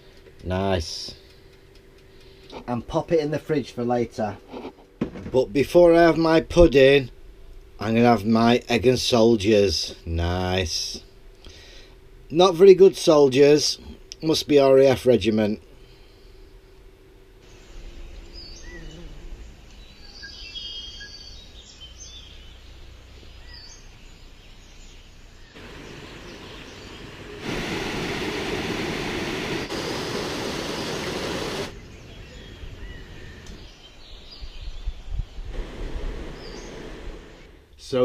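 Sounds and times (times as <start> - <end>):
steady rushing noise: 25.6 - 32.0, 35.4 - 37.7.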